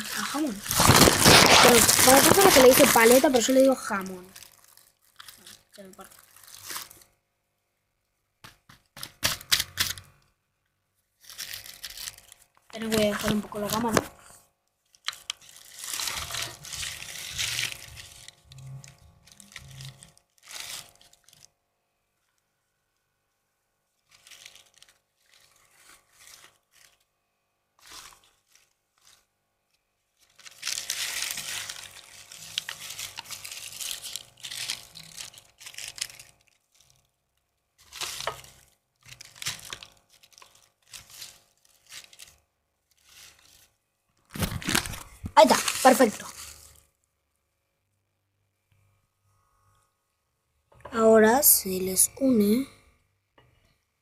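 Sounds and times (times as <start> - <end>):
crinkling and rustling: 0.0 - 7.2, 11.2 - 21.6, 24.0 - 46.9.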